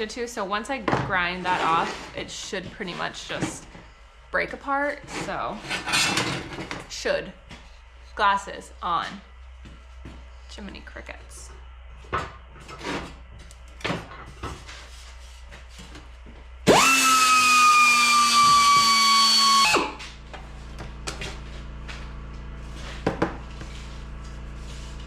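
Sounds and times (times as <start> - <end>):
angle grinder whining: 16.6 - 20.2.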